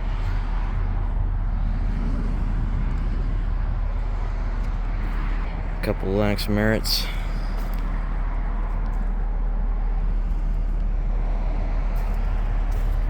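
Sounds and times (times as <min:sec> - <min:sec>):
fan rush: 0:00.0 - 0:13.0
low hum: 0:00.0 - 0:13.0.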